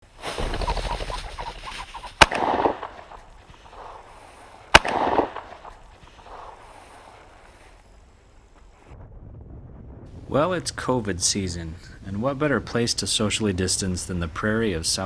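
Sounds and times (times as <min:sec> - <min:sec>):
bird wings fluttering: 0:00.0 - 0:09.0
shotgun shots with echo: 0:00.3 - 0:03.3, 0:04.7 - 0:06.4
pheasant cackling: 0:00.4 - 0:04.0.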